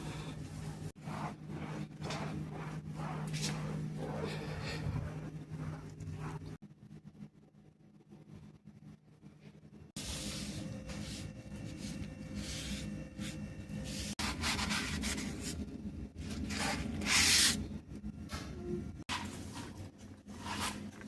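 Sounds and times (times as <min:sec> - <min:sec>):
scrubbing on a hard surface: 0:00.6 - 0:06.6.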